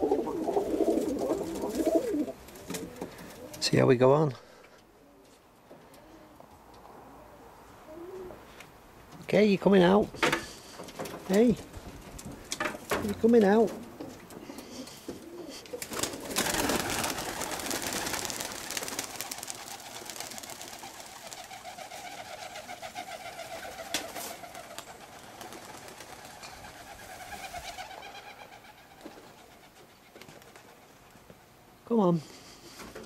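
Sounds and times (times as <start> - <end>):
pigeons cooing: 0.0 - 3.6, 5.9 - 8.6, 13.8 - 30.8
loud rustling: 15.9 - 26.6.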